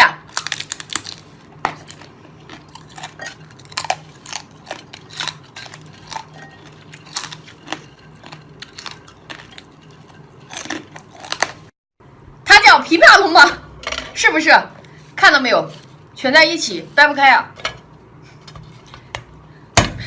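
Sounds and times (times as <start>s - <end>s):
shells cracking and crunching: 0.3s - 9.7s
chewing: 1.8s - 11.6s.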